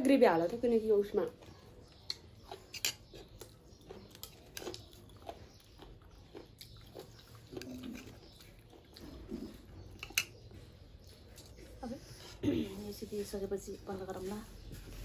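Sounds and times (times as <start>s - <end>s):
chewing: 1.3s - 12.4s.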